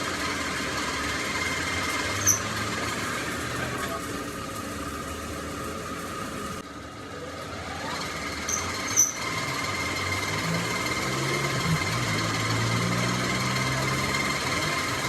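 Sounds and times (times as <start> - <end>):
machine humming: 7.6 - 15.0.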